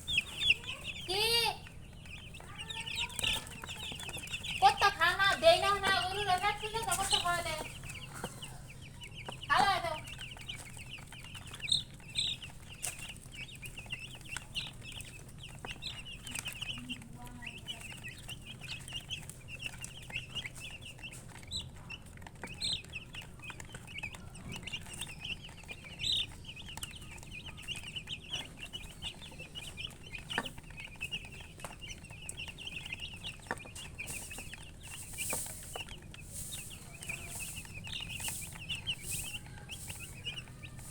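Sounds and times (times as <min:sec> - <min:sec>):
baby chicks peeping: 0:00.0 - 0:40.9.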